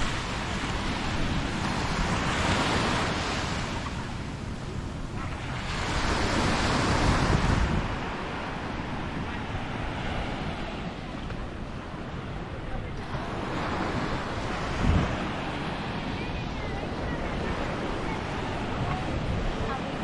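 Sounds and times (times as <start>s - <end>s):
sea waves breaking on a beach: 0.0s - 20.0s
wind rumble on microphone: 0.0s - 20.0s.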